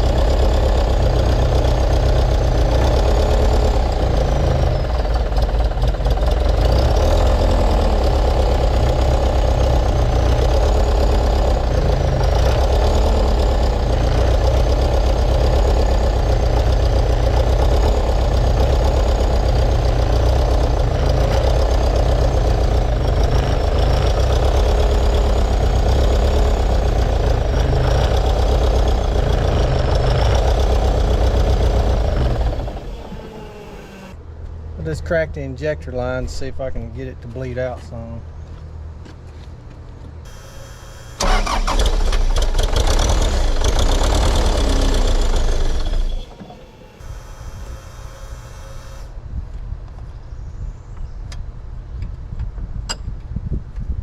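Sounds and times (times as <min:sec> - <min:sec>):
diesel engine clattering: 0:00.0 - 0:49.1
faint wavering high whine: 0:40.3 - 0:41.2, 0:45.8 - 0:49.1.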